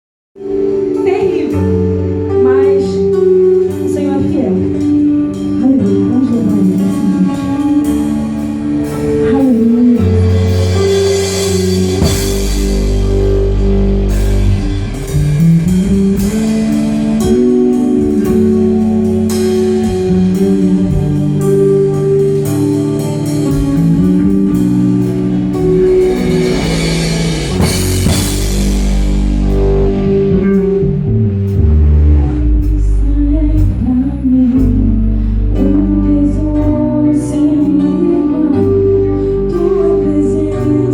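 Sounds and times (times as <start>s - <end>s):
gospel band playing: 0.4s - 40.9s
cymbal crashes: 10.1s - 20.0s, 25.5s - 30.8s.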